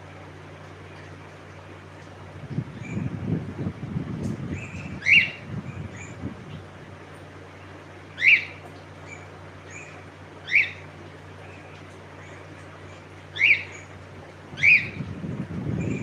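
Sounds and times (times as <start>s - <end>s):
steady low hum: 0.0s - 16.0s
cockatiel calling: 8.2s - 8.6s, 10.5s - 10.8s, 13.4s - 13.8s.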